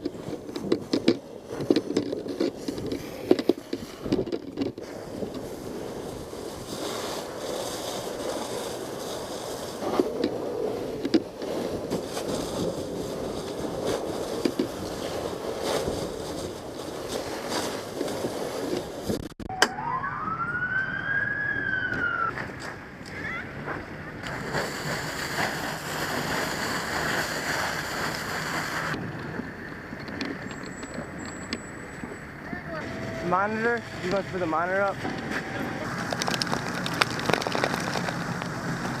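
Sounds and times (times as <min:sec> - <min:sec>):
emergency vehicle siren wail: 0:19.4 - 0:22.6, 0:31.8 - 0:36.2.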